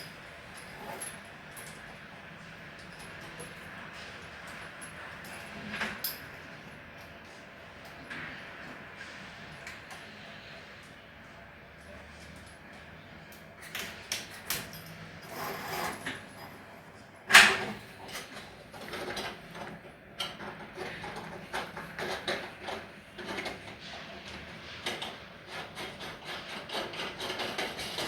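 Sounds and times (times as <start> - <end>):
clicks and scraping of plumbing parts: 11.8 - 28.0.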